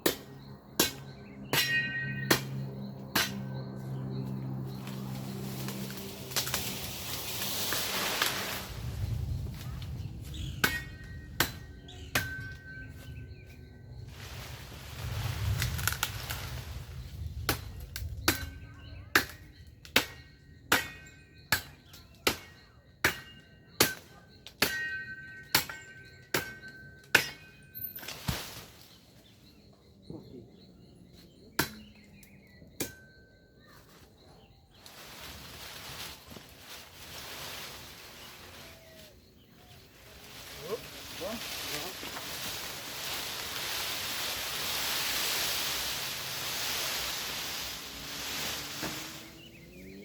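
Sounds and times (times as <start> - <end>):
blade chopping branches: 0.0 - 13.2, 14.2 - 29.0, 31.5 - 33.0, 40.0 - 50.0.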